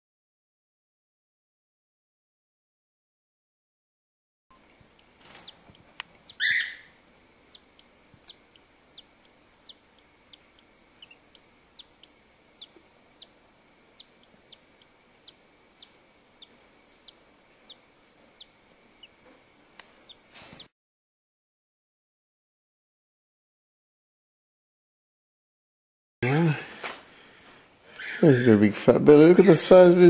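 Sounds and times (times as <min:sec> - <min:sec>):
cockatiel chick peeping: 0:04.5 - 0:20.7.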